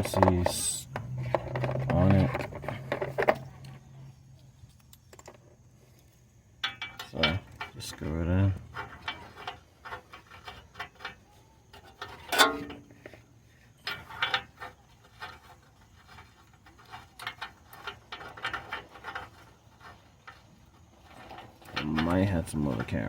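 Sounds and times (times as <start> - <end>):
metallic clicks and rubbing: 0.0 - 23.0
metal clank: 6.6 - 15.5.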